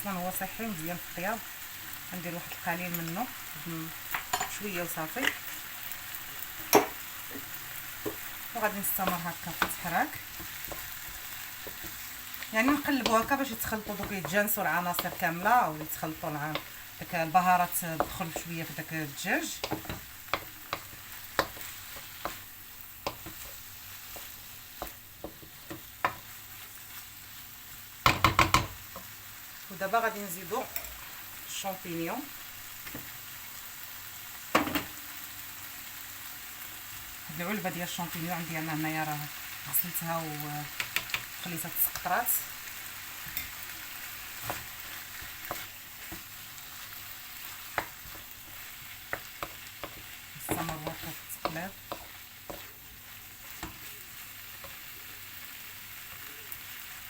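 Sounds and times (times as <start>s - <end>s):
chicken sizzling in a frying pan: 0.0s - 57.0s
utensil clicking against pan: 19.6s - 22.4s, 40.7s - 41.3s
utensil scraping against pan: 47.4s - 54.0s.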